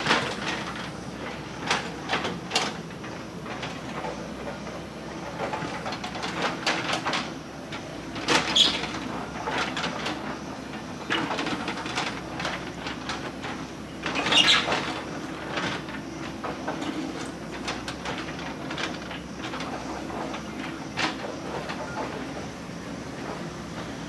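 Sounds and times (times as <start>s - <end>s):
diesel engine under load: 0.0s - 24.0s
metal linkage squeal: 14.2s - 14.8s.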